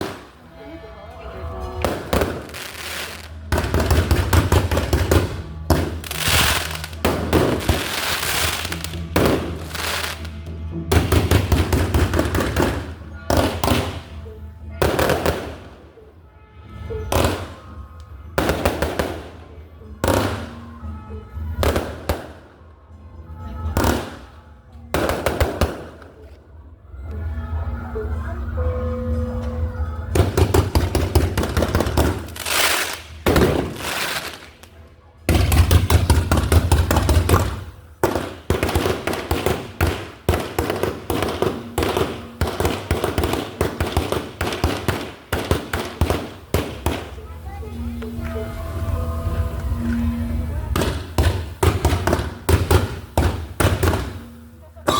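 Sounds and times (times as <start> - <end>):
fireworks bangs and crackle: 0.0 - 0.4, 1.8 - 14.2, 14.8 - 15.8, 17.0 - 20.6, 21.6 - 22.6, 23.7 - 24.3, 24.9 - 26.2, 30.1 - 34.7, 35.3 - 47.3, 50.7 - 54.4.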